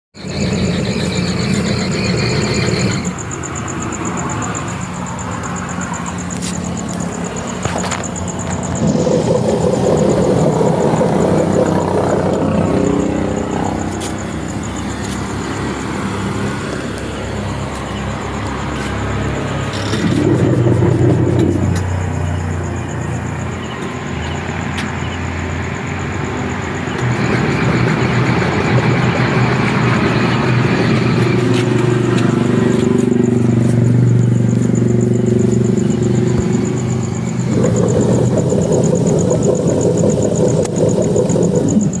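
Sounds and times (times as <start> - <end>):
small engine running: 0.2 - 3.4, 7.6 - 14.3, 26.8 - 42.0
thin high whine: 0.2 - 16.5.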